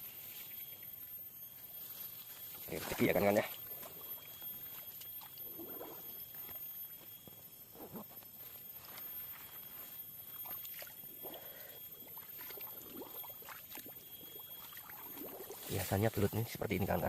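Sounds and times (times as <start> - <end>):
soft footsteps and scuffs: 6.5 - 10.1
rustling of grass: 15.6 - 16.5.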